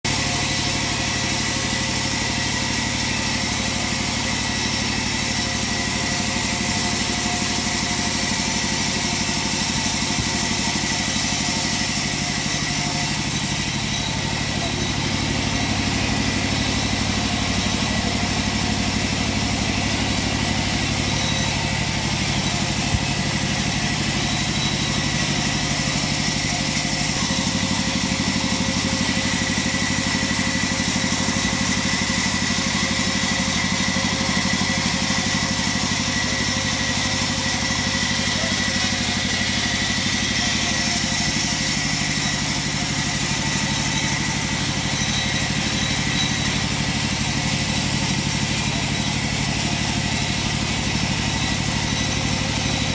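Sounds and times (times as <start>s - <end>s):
saw motor humming and hissing: 0.1s - 52.9s.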